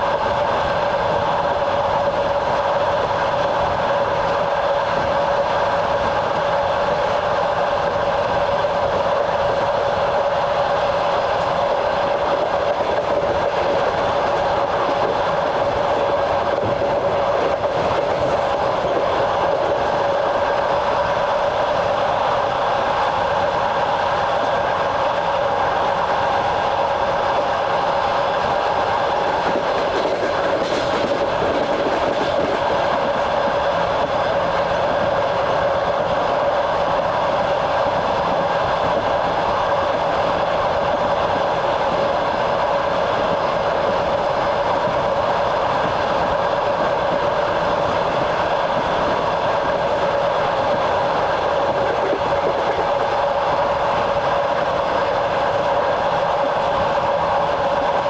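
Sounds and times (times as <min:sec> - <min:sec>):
train rolling rumble: 0:00.0 - 0:58.0
wheels clattering on rails: 0:28.3 - 0:33.6.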